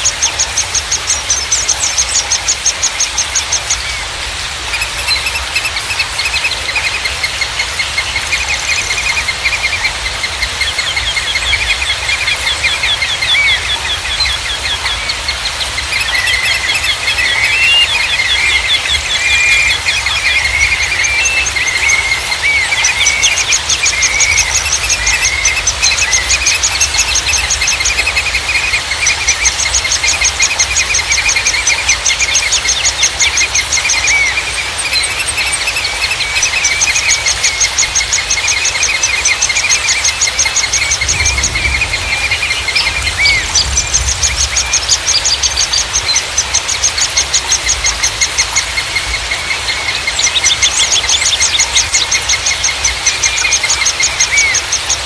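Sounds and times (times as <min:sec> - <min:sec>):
birds chirping: 0:00.0 - 0:55.0
songbird high fast trill: 0:04.7 - 0:55.0
low rumble: 0:40.9 - 0:45.5.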